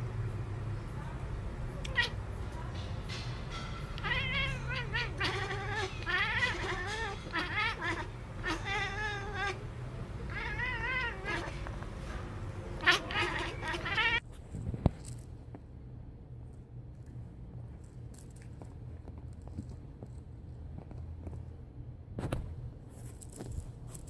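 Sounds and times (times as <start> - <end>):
cat yowling: 1.8 - 2.2, 3.9 - 11.8, 12.6 - 14.2.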